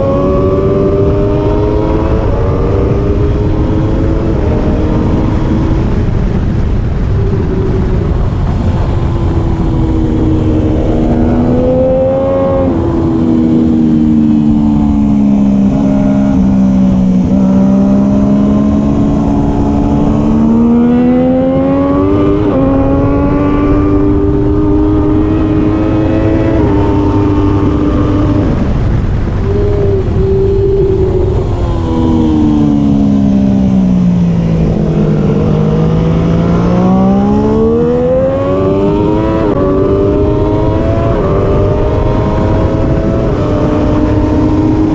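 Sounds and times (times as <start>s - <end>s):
motorcycle engine at racing speed: 0.0s - 44.9s
steady rush of noise: 0.0s - 44.9s.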